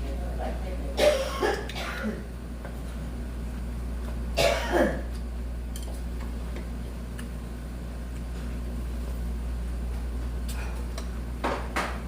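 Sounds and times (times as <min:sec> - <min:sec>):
steady low hum: 0:00.0 - 0:12.0
person clearing throat: 0:01.0 - 0:02.3, 0:04.4 - 0:05.1.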